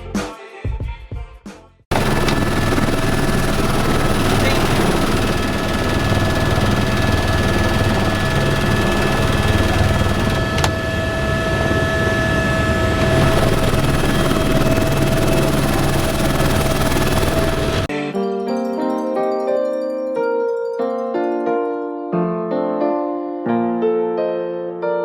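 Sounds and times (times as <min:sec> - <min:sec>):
helicopter rotor and engine noise: 0:01.9 - 0:17.9
piano music: 0:01.9 - 0:25.0.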